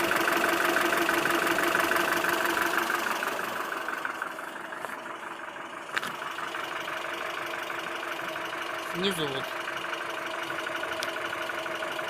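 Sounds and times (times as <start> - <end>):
engine running with fast knock: 5.8 - 12.0.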